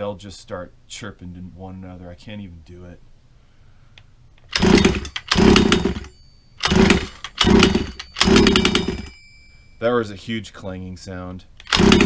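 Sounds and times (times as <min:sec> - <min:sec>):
motorcycle engine cranking: 0:04.4 - 0:09.2, 0:11.6 - 0:12.0
loud metallic clanging: 0:04.6 - 0:09.2
high bell-like ring: 0:06.0 - 0:10.4.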